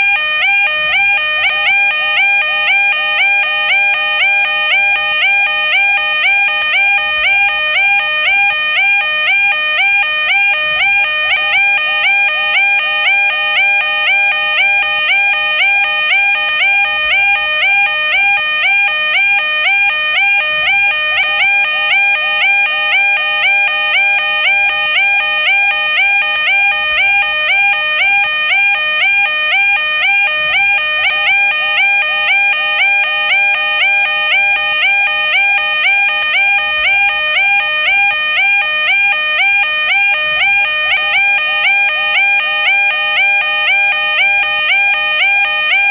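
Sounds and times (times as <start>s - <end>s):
level crossing alarm two-note tone: 0.0s - 45.9s.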